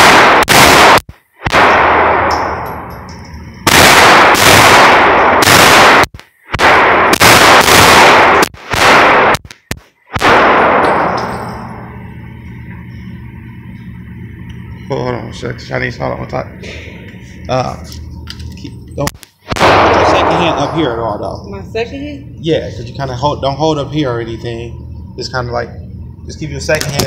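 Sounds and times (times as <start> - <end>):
pistol shots echoing: 0.0 - 2.8, 3.7 - 9.4, 10.2 - 11.8, 19.5 - 21.2
low background hum: 0.0 - 27.0.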